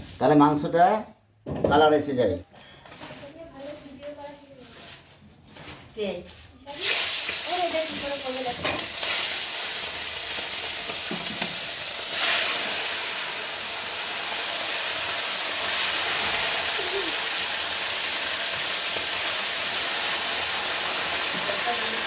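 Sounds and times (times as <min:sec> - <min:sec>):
chicken frying in hot oil: 0:06.7 - 0:22.0.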